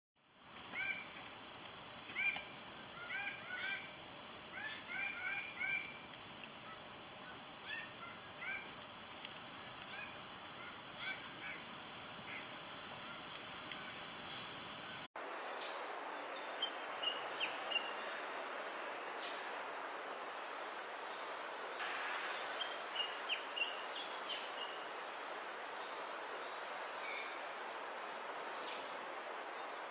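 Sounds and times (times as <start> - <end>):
high insect drone: 0.2 - 15.1.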